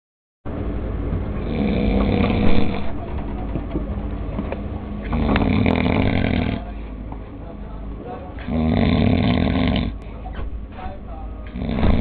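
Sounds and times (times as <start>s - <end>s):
loud heavy snoring: 1.4s - 3.0s, 5.1s - 6.7s, 8.4s - 10.0s, 11.5s - 12.0s.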